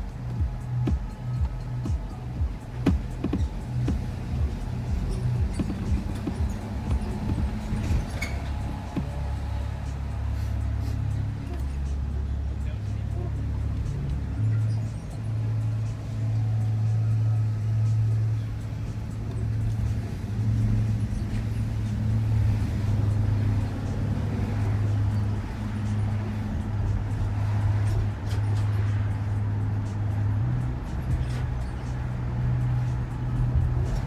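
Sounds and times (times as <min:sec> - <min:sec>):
van engine and road drone: 0:00.0 - 0:34.0.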